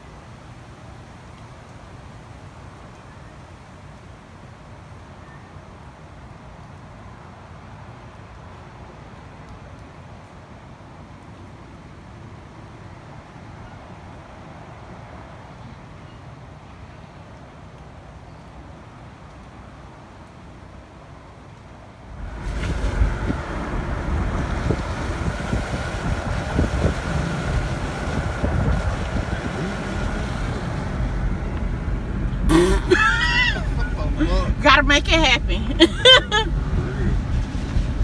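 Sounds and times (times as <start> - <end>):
faint outdoor noise: 0.0 - 38.0
wind buffeting microphone: 22.1 - 32.5, 33.5 - 38.0
steady hum: 22.1 - 37.5
loud low rumble: 22.1 - 38.0.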